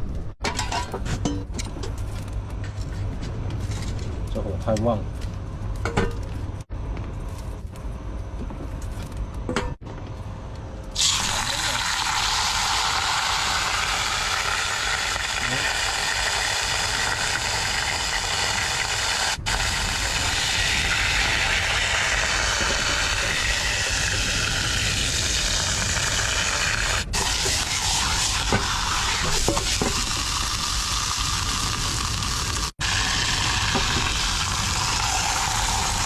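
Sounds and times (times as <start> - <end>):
fish sizzling in hot oil: 11.0 - 36.0.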